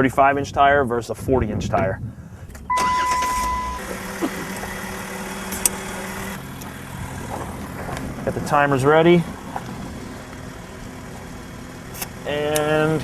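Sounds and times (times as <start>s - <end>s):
car engine idling: 2.6s - 13.0s
steady beep: 2.7s - 3.9s.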